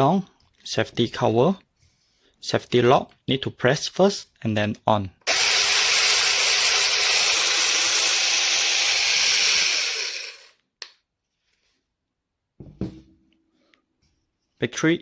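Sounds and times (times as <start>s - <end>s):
mini chainsaw motor whirring: 5.3s - 10.6s.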